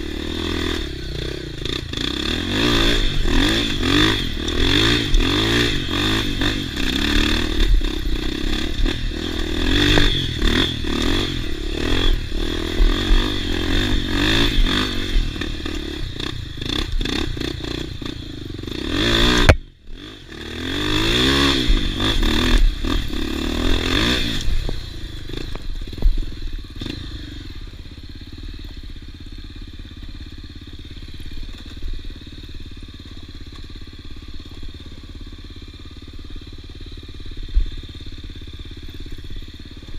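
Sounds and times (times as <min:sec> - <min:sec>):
off-road motorcycle engine revving: 0:00.0 - 0:39.9.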